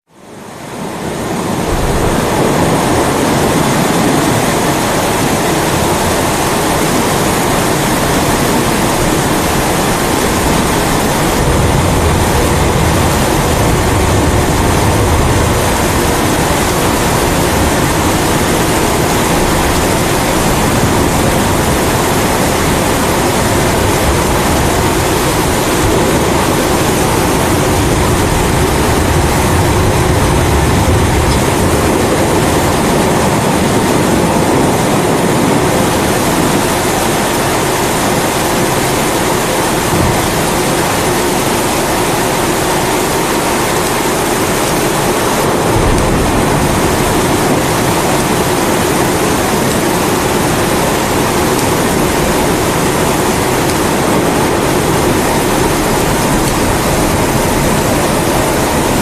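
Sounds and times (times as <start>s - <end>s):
steady rain: 0.1s - 59.0s
deep low rumble: 1.6s - 4.2s, 8.0s - 33.4s, 45.4s - 48.8s.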